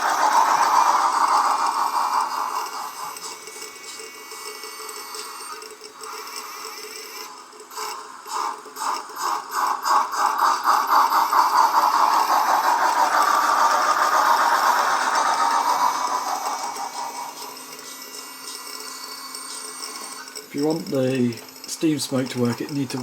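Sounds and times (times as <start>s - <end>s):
steam exhaust chuffs: 0.0s - 6.6s, 7.3s - 19.3s.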